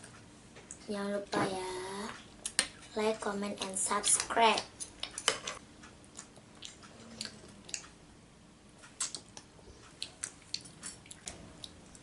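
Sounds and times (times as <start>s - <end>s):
child chewing food: 4.2s - 8.0s, 8.7s - 12.0s
mouth clicks: 8.9s - 11.8s.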